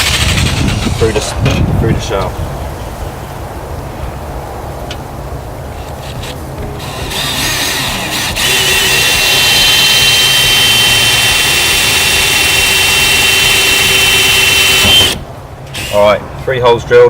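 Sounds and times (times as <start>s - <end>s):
power drill whining through metal: 0.0s - 1.0s, 5.8s - 16.2s.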